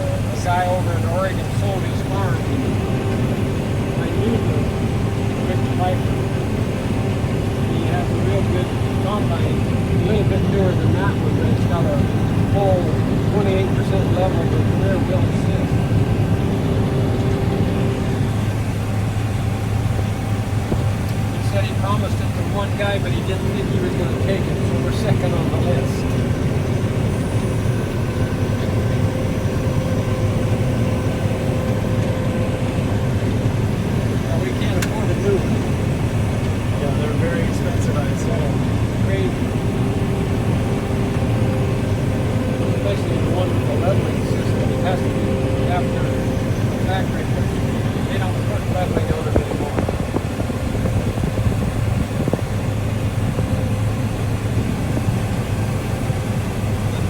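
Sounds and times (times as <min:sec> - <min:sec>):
combine harvester low rumble: 0:00.0 - 0:57.0
faint steady whine: 0:00.0 - 0:57.0.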